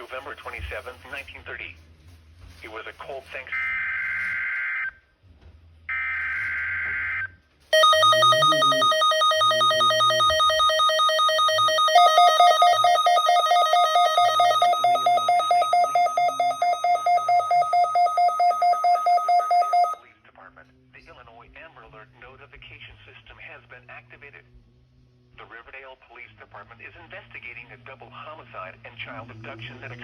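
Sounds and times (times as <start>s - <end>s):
buzzing digital data tone: 7.8s - 20.0s
pulsing electronic alarm beeps: 7.8s - 20.0s.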